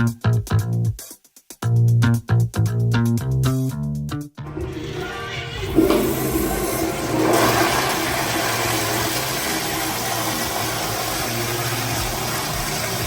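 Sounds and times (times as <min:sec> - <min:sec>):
toilet flushing: 0:04.5 - 0:13.0.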